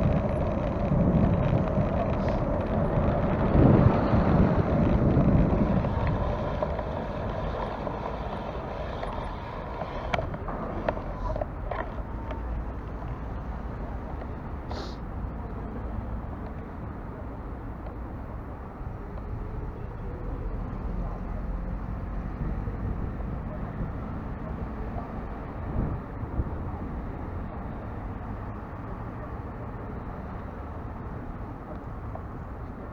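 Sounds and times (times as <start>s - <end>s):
wind rushing over microphone: 0.0s - 14.7s, 21.8s - 27.6s
short hiss: 14.7s - 15.0s.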